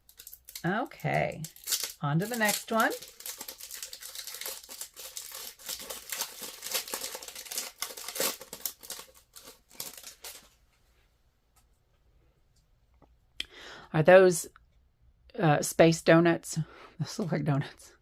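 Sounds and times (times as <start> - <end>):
card pack wrapper tearing: 0.0 - 10.5.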